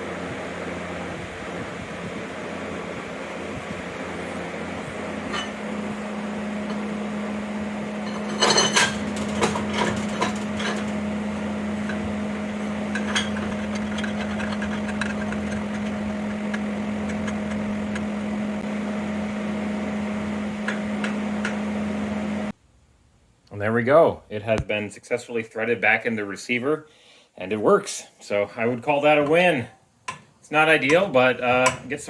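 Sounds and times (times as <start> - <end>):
steady low hum: 0.0 - 23.3
metal clinks and knocks from vise: 8.0 - 11.0, 12.9 - 18.0.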